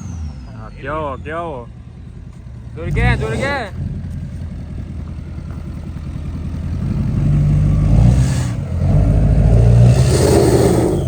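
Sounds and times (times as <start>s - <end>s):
pickup truck engine revving: 0.0s - 4.1s, 6.5s - 11.0s.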